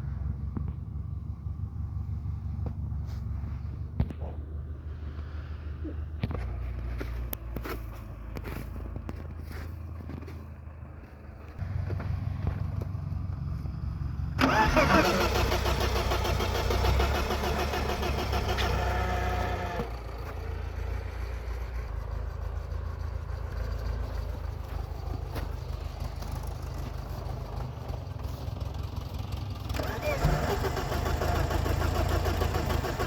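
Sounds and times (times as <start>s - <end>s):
low engine rumble: 0.0s - 33.0s
starter cranking engine: 14.4s - 20.0s, 29.0s - 33.0s.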